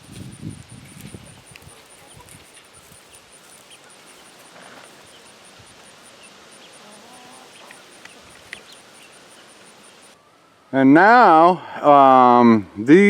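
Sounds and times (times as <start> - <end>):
wind noise on microphone: 0.0 - 3.1
chickens chirping: 0.0 - 10.2
faint high ticking: 0.2 - 10.2
hen call: 0.9 - 10.2.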